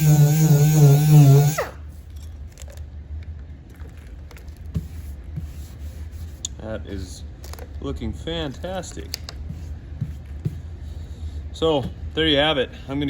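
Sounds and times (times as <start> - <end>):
pneumatic sander running: 0.0 - 1.8.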